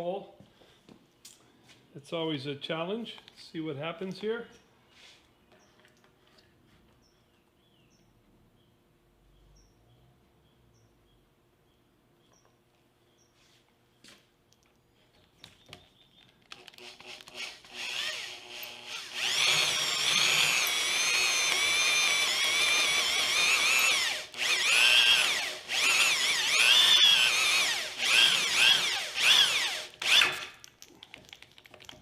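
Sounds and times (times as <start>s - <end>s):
drill squealing through steel: 17.0s - 30.5s.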